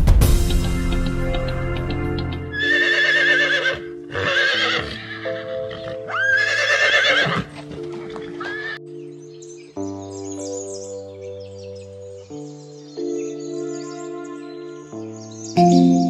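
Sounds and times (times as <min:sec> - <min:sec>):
background music with chords: 0:00.0 - 0:16.0
horse whinnying: 0:02.6 - 0:08.8.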